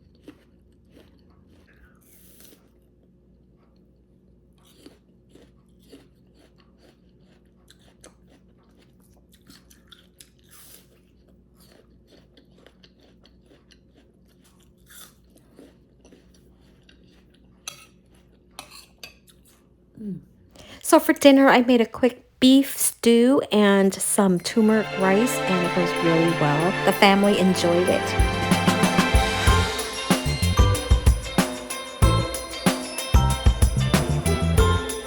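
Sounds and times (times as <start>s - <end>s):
person chewing crunchy food: 0.0s - 19.7s.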